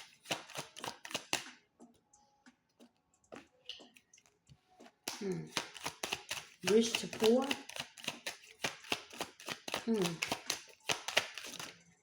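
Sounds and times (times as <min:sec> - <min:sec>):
cards shuffling with snaps: 0:00.0 - 0:01.6, 0:04.9 - 0:11.8.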